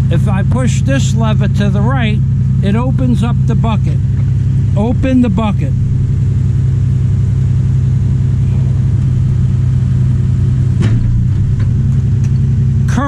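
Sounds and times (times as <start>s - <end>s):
diesel excavator engine running: 0.0s - 13.0s
brief knock: 10.8s - 11.8s.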